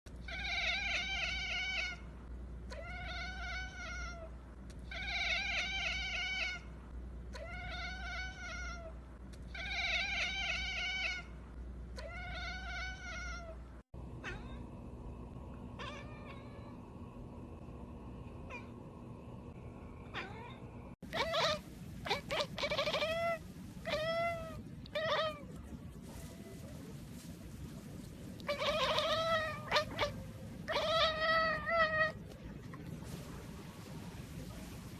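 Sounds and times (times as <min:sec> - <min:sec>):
kitten meowing: 0:21.1 - 0:25.5.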